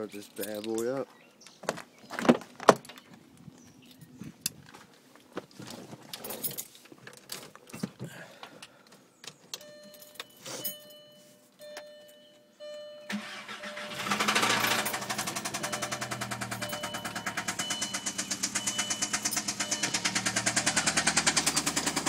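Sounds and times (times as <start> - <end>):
dashboard chime beeping: 9.6 - 14.1, 15.6 - 20.4
car engine starting and idling: 12.7 - 22.0.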